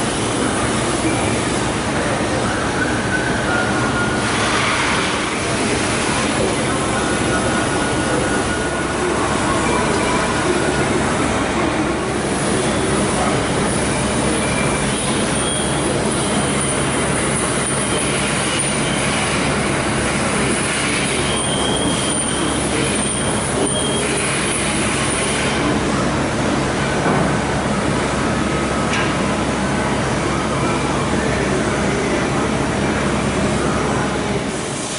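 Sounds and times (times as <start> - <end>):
cnc machine running: 0.0 - 34.9
high-pitched machine squeals: 12.3 - 19.6, 20.4 - 25.6.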